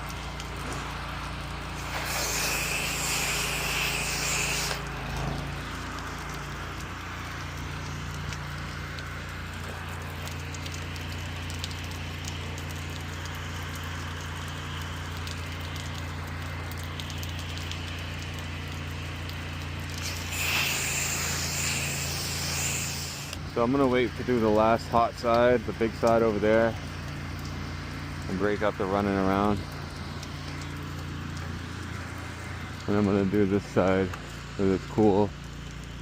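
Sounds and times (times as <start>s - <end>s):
pressure washer engine running: 0.0s - 36.0s
spray wand hissing: 1.8s - 4.8s, 20.0s - 23.4s.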